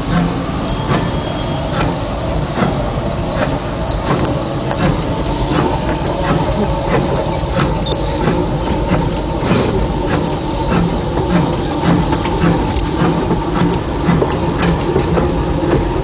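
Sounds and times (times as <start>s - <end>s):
sharp rail clicks: 0.0s - 16.0s
steam locomotive rumble and rattle: 0.0s - 16.0s.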